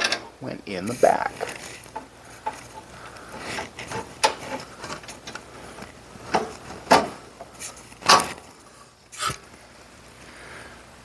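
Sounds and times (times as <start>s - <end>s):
metal parts clanking: 0.0s - 0.3s.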